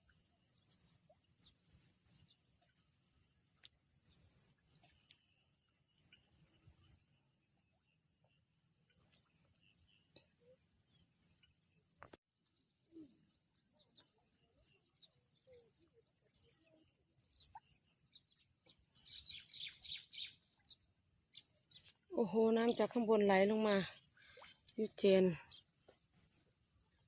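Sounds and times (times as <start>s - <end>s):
bird chirps: 12.9s - 22.8s.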